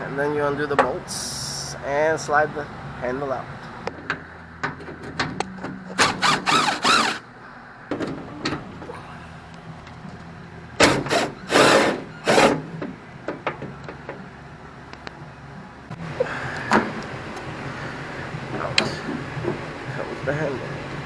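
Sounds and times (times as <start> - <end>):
metal and plastic scraping rattling: 4.8 - 7.2.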